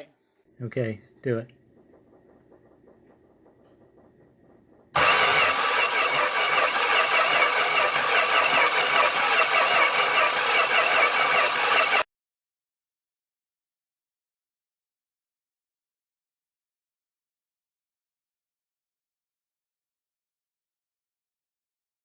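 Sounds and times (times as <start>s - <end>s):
engine cranking on starter: 5.0s - 12.0s.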